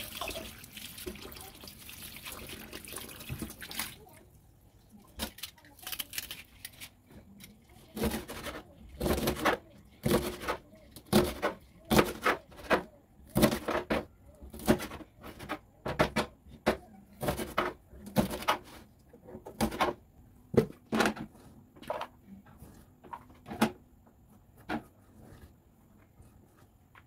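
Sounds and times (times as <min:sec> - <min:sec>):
knocks and clicks of food prep: 0:08.0 - 0:22.1, 0:23.0 - 0:25.0.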